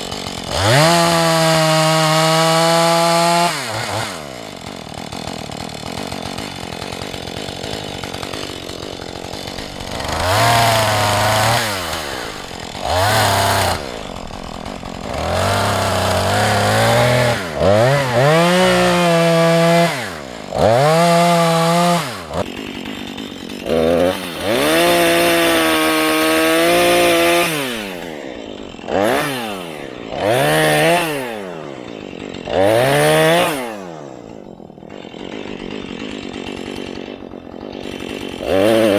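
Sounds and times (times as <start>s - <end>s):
chainsaw revving: 0.0s - 38.9s.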